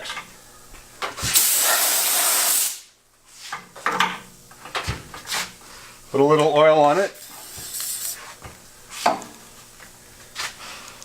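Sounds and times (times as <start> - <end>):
pressurized spray hissing: 1.4 - 2.8, 7.2 - 8.3.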